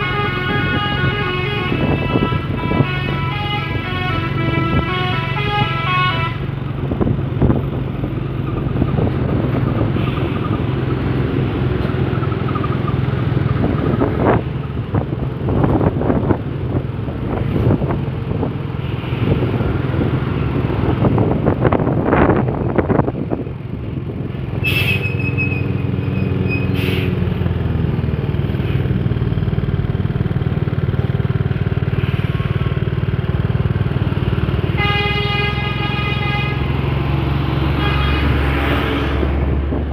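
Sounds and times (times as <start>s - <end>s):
multi-tone truck horn tune: 0.0s - 6.8s, 24.6s - 27.2s, 34.4s - 39.4s
truck engine running: 0.0s - 39.9s
vehicles passing: 0.0s - 39.9s.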